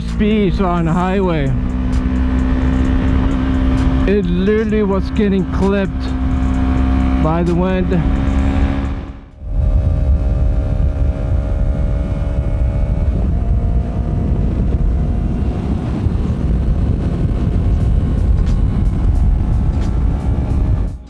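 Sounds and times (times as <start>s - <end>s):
motorcycle engine drone: 0.0s - 21.0s
wind buffeting microphone: 0.0s - 21.0s.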